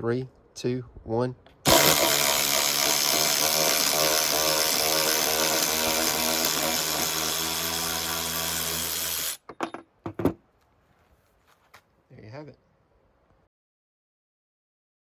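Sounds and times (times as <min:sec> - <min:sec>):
cordless ratchet motor whirring: 0:01.7 - 0:09.4.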